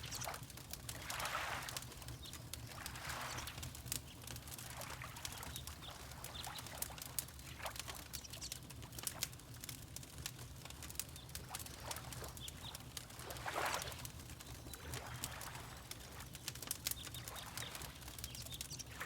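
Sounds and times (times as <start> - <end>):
water lapping: 0.0 - 8.1, 10.8 - 18.2
wood fire crackling and popping: 0.0 - 19.0
faint bird chirps: 14.4 - 19.0.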